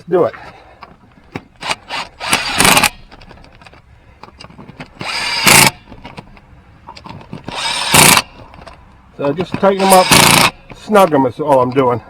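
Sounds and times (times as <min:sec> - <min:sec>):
cordless power tool whirring: 0:01.6 - 0:03.7, 0:04.8 - 0:06.2, 0:07.3 - 0:08.7, 0:09.4 - 0:10.9.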